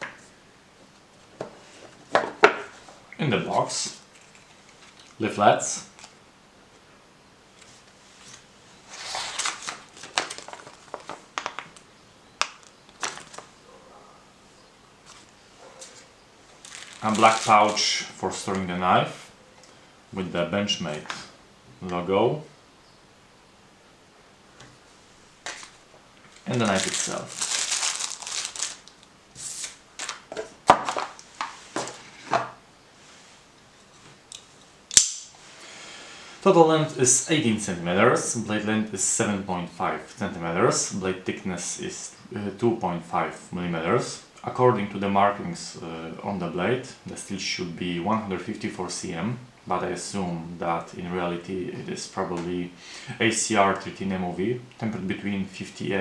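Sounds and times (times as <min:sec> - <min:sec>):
paper leaflets rustling: 0:01.3 - 0:05.2, 0:07.5 - 0:13.6, 0:15.0 - 0:18.8, 0:24.8 - 0:32.5.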